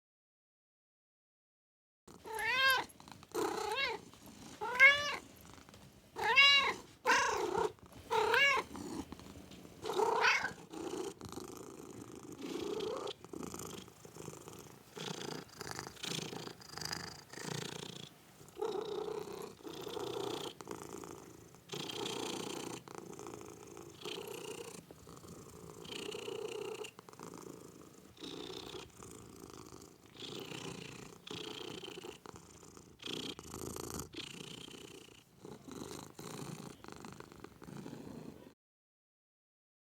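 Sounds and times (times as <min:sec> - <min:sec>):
cat purring: 0:02.1 - 0:38.6
cat meowing: 0:02.2 - 0:04.0, 0:04.6 - 0:05.2, 0:06.2 - 0:08.7, 0:09.9 - 0:10.6.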